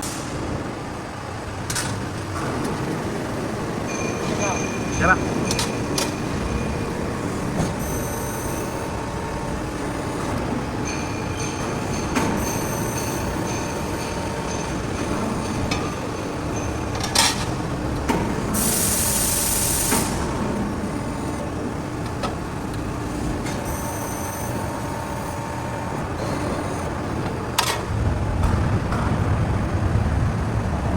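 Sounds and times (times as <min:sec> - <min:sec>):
hydraulic hiss: 0:18.5 - 0:20.3
low rumble: 0:27.9 - 0:30.9.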